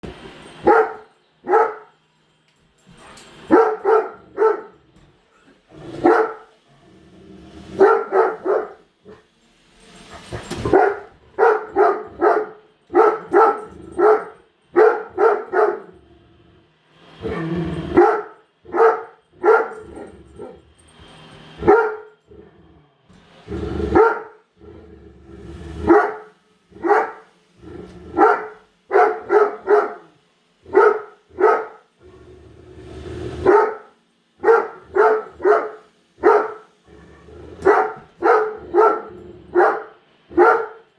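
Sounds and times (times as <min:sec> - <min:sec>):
dog barking deeply: 0:07.8 - 0:08.8, 0:10.7 - 0:15.9, 0:23.9 - 0:24.4, 0:28.2 - 0:30.1, 0:33.4 - 0:36.7, 0:37.6 - 0:40.8.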